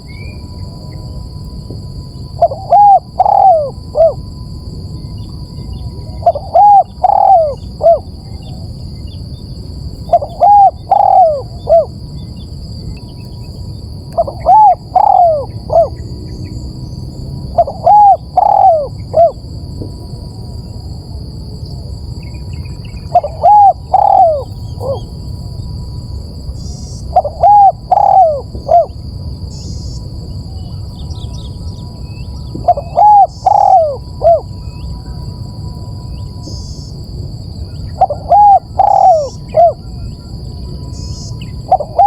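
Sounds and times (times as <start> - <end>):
dove cooing: 2.4 - 4.3, 5.5 - 8.7, 10.0 - 12.1, 14.1 - 20.3, 22.8 - 25.2, 26.6 - 31.5, 32.3 - 35.2, 37.8 - 40.2, 40.9 - 42.0.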